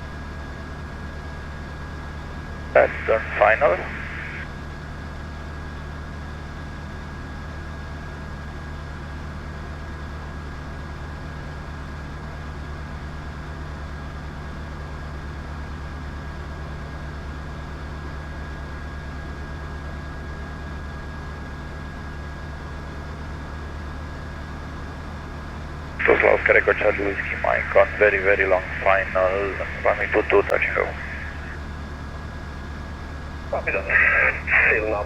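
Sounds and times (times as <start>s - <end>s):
thin steady whine: 0.0s - 5.8s, 17.6s - 35.0s
aircraft engine droning: 1.1s - 4.8s, 24.4s - 35.0s.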